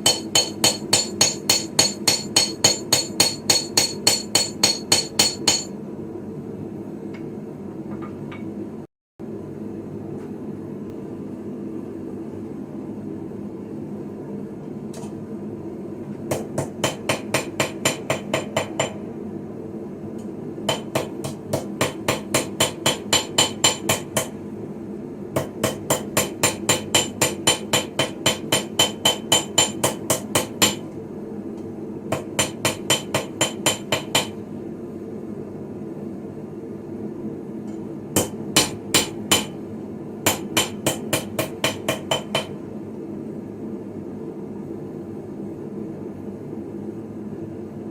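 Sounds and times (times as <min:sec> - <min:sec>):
hammer ringing on anvil: 0:00.0 - 0:05.8.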